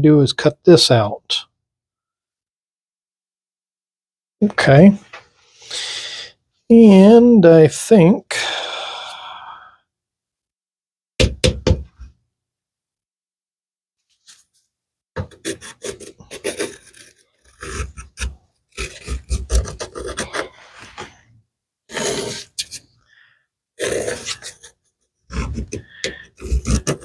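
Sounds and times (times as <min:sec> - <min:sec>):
hand rasping on a workpiece: 0:15.2 - 0:21.1, 0:23.8 - 0:27.0.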